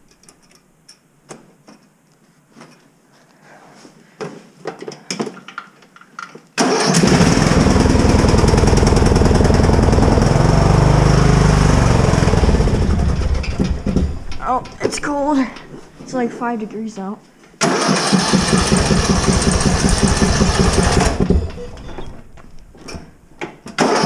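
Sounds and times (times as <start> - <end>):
lawn mower engine running: 6.6 - 14.5, 17.6 - 21.8, 23.8 - 24.0
clicks and knocks: 13.4 - 15.7.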